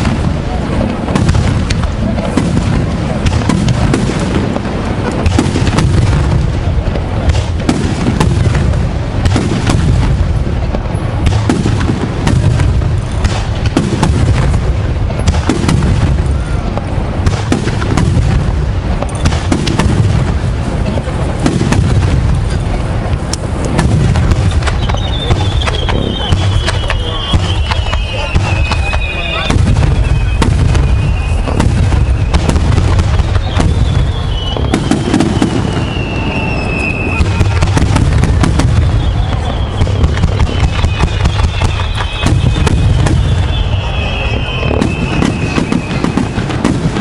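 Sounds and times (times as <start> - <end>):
fireworks booming and crackling: 0.0 - 47.0
whistle falling in pitch: 24.6 - 32.5, 33.4 - 34.9, 35.7 - 37.6, 38.8 - 46.1.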